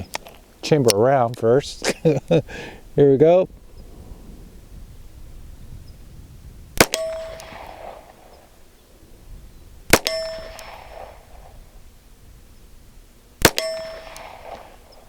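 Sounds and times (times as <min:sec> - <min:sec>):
bullet clanging on steel target: 0:06.8 - 0:07.6, 0:10.0 - 0:10.8, 0:13.5 - 0:14.7
pistol shots: 0:06.8 - 0:08.5, 0:09.9 - 0:11.6, 0:13.4 - 0:15.0.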